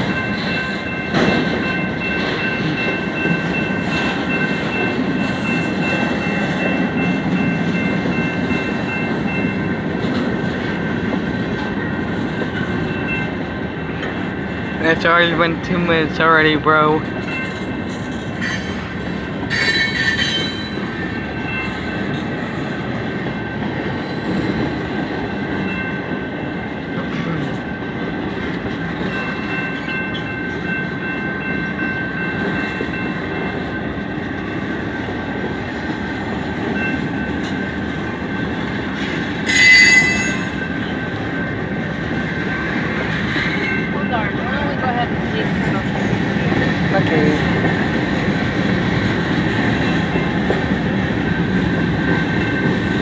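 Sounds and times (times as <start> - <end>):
train wheels rumbling on rail: 0.0 - 53.0
high wheel squeal: 39.4 - 40.9.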